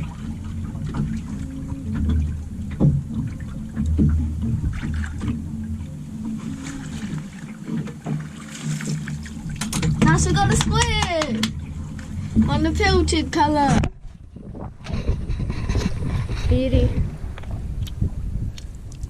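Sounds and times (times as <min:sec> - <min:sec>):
boat motor idling: 0:00.0 - 0:19.0
water splashing: 0:00.0 - 0:19.0
knocks on boat: 0:01.9 - 0:05.6, 0:06.3 - 0:15.3.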